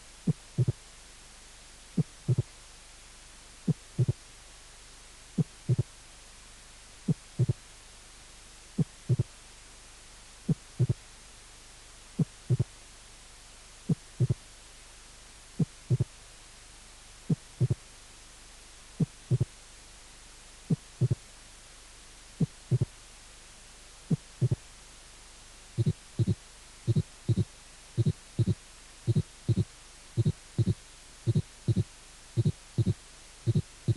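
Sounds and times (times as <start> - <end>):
background hiss: 0.0 - 33.9
heartbeat: 0.3 - 0.8, 2.0 - 2.5, 3.7 - 4.2, 5.4 - 5.9, 7.1 - 7.6, 8.8 - 9.3, 10.5 - 11.0, 12.2 - 12.7, 13.9 - 14.4, 15.6 - 16.2, 17.3 - 17.8, 19.0 - 19.6, 20.7 - 21.2, 22.4 - 23.0, 24.1 - 24.6, 25.8 - 33.9.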